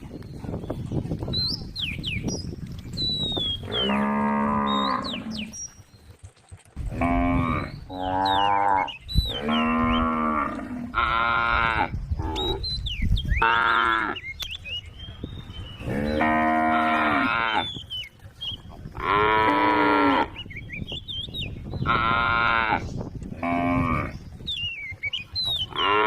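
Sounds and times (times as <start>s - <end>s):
cows mooing: 3.6s - 5.6s, 6.8s - 12.6s, 13.4s - 14.2s, 15.8s - 17.8s, 19.0s - 20.4s, 21.8s - 24.2s, 25.7s - 26.0s.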